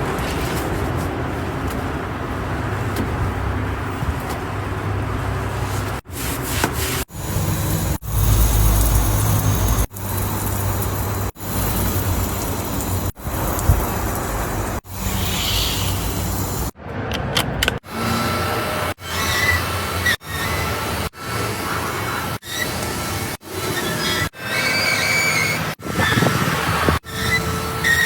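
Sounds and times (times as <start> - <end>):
hose water spraying on glass: 5.6 - 16.8.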